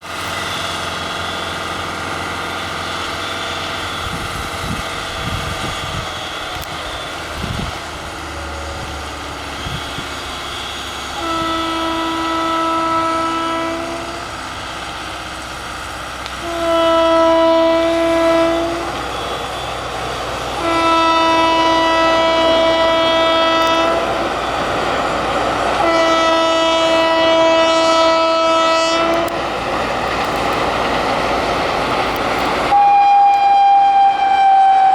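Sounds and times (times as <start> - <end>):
passing train noise: 0.0 - 34.9
locomotive horn blasts: 10.5 - 14.5, 16.2 - 19.8, 20.5 - 24.4, 25.7 - 29.4, 32.7 - 34.9.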